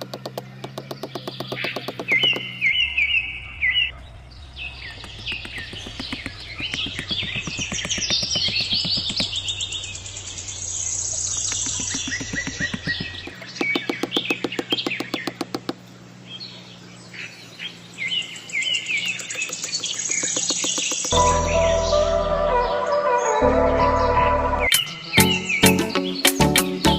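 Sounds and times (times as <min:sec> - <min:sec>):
rapid even ticking: 0:00.0 - 0:02.6, 0:04.4 - 0:15.9, 0:18.9 - 0:21.2
small birds chirping: 0:00.0 - 0:23.0, 0:24.6 - 0:26.9.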